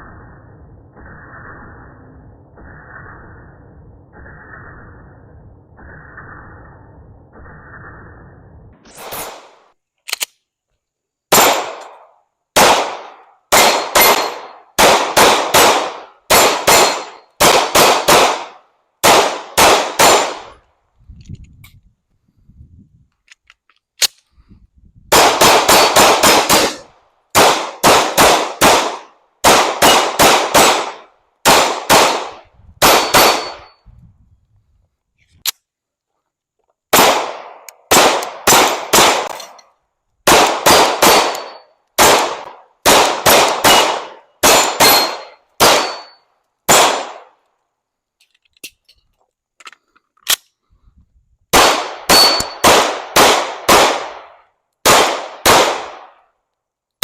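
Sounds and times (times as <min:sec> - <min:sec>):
rapid pistol fire: 0:12.6 - 0:20.6, 0:25.1 - 0:33.6, 0:36.9 - 0:39.3, 0:40.2 - 0:46.1, 0:46.7 - 0:47.3, 0:51.5 - 0:56.2.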